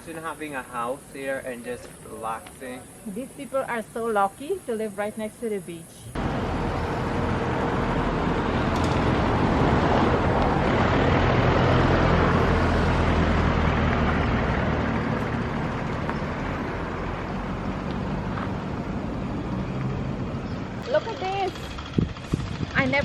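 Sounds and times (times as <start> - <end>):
vehicle passing by: 6.2 - 23.0.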